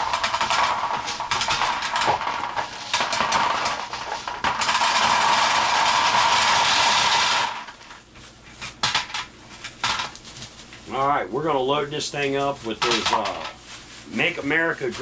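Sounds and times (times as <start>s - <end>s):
gumballs clattering: 0.0s - 8.0s, 12.7s - 13.6s.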